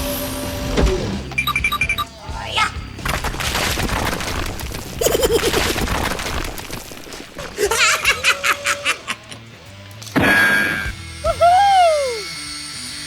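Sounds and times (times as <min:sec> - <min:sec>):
giggling snickering laughter: 0:05.0 - 0:05.8, 0:07.4 - 0:09.6.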